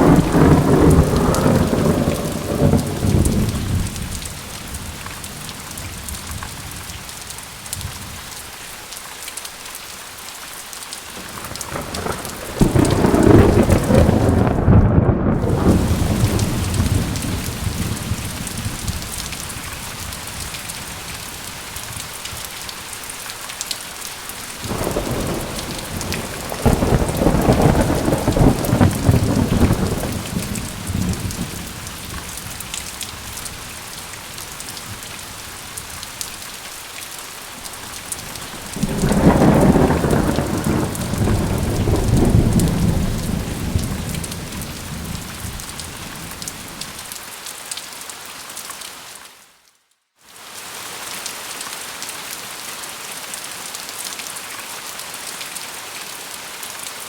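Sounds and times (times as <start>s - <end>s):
thunder rolling: 0.0s - 4.2s, 11.2s - 20.1s, 24.6s - 33.3s, 38.2s - 47.0s
heavy rain hissing: 0.0s - 8.9s, 10.2s - 47.1s.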